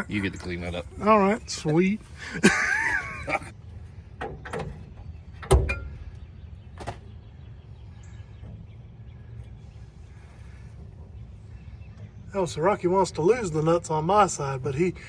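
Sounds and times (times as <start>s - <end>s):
low steady rumble: 0.0s - 15.0s
metallic knocks and clanks: 4.1s - 6.1s.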